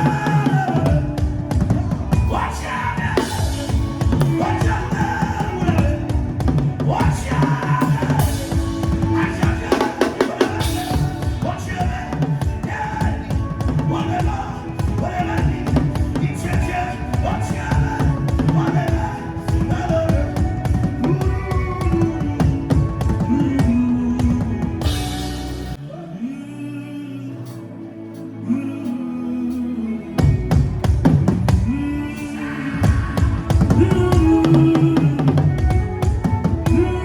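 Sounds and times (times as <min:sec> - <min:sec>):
bass line: 0:00.0 - 0:26.6, 0:30.2 - 0:37.0
voices singing: 0:00.0 - 0:37.0
fast drumming on drum kit: 0:03.1 - 0:25.7, 0:32.8 - 0:37.0.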